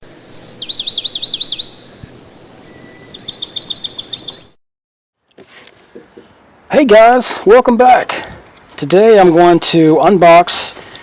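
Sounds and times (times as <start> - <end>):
bird singing: 0.1 - 4.6.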